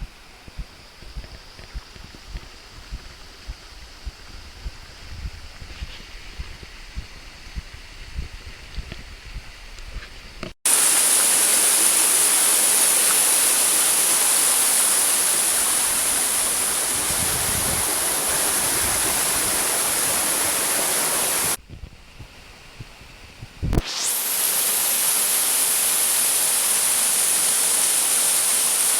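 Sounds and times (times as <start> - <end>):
waterfall rushing: 10.7 - 21.6, 23.8 - 28.9.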